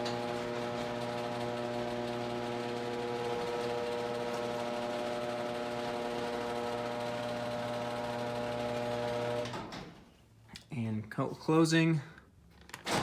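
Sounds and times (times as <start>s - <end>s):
garage door opener motor hum: 0.0s - 10.0s.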